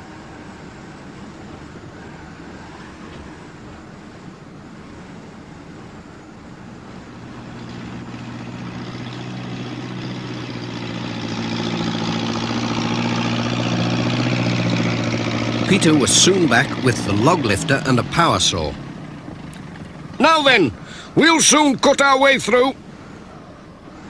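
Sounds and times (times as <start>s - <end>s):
wind blowing: 0.0s - 24.0s
heavy machine engine: 3.0s - 22.0s.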